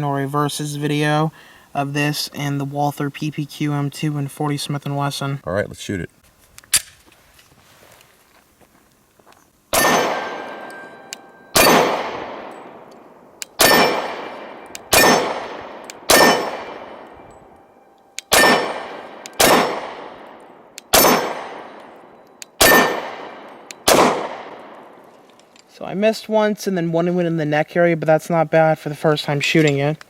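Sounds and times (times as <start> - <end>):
pistol shots echoing: 9.7 - 17.4, 18.2 - 25.0.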